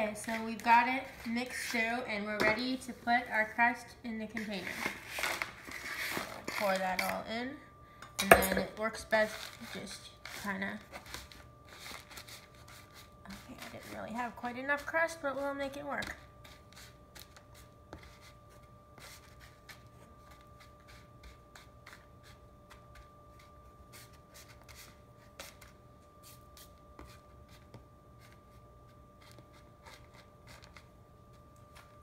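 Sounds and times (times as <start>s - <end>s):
faint steady hum: 0.0s - 32.0s
crumbs scraping and rustling: 4.4s - 7.1s, 9.2s - 14.1s.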